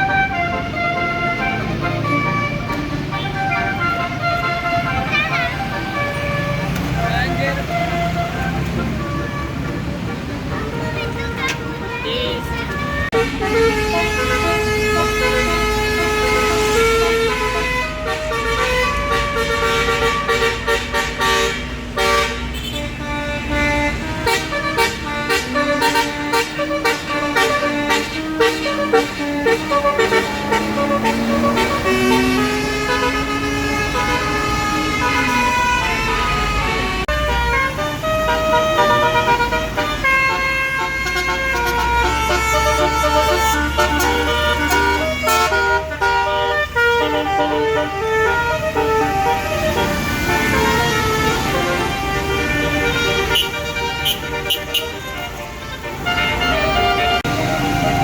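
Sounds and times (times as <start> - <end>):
multi-tone bus horn melody: 0.0 - 58.0
low siren-like horn tone: 12.0 - 55.3.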